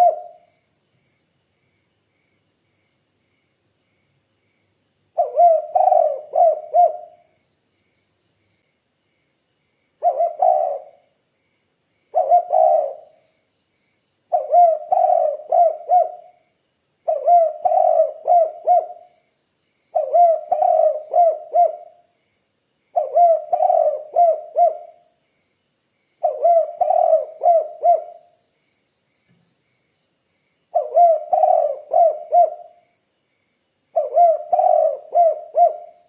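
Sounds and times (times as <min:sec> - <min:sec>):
dove cooing: 0:00.0 - 0:00.5, 0:05.2 - 0:07.3, 0:10.0 - 0:11.0, 0:12.1 - 0:13.2, 0:14.3 - 0:16.4, 0:17.1 - 0:19.1, 0:19.9 - 0:22.0, 0:23.0 - 0:25.0, 0:26.2 - 0:28.3, 0:30.7 - 0:32.8, 0:34.0 - 0:36.0.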